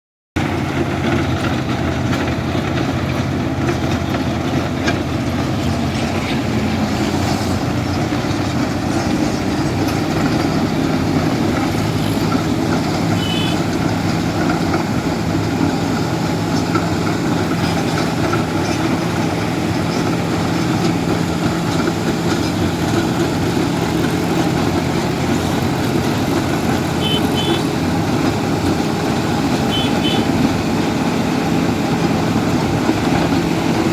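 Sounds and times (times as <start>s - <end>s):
road milling machine running: 0.4s - 33.9s
short high beeps: 27.0s - 27.6s.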